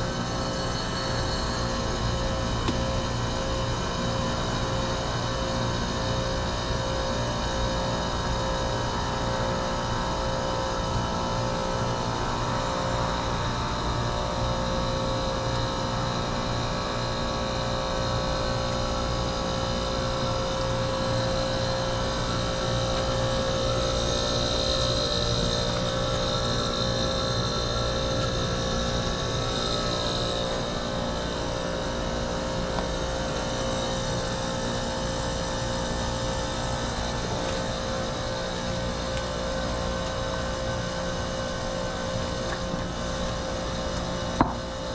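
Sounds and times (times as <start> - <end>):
high whine: 0.0 - 8.6
heat pump compressor humming: 0.0 - 44.9.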